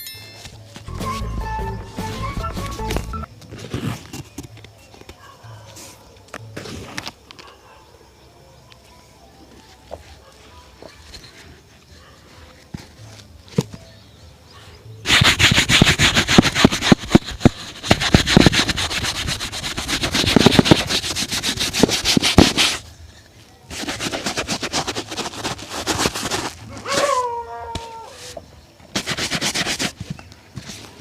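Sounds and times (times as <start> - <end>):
shoe brush scratching: 15.1 - 22.9, 23.7 - 27.2, 27.8 - 31.0.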